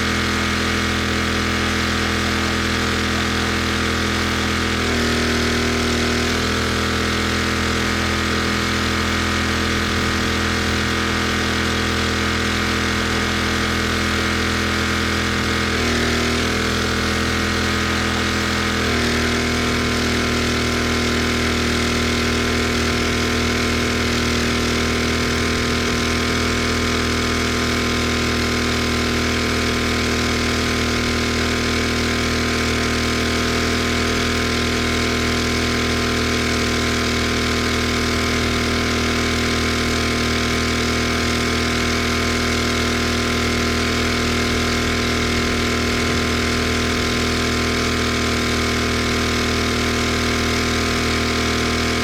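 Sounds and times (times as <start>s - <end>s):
pressure washer engine running: 0.0s - 52.0s.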